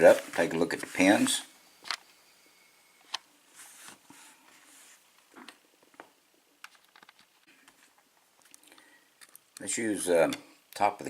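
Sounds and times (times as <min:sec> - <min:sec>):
soft rustling: 0:00.0 - 0:01.6, 0:03.4 - 0:06.0.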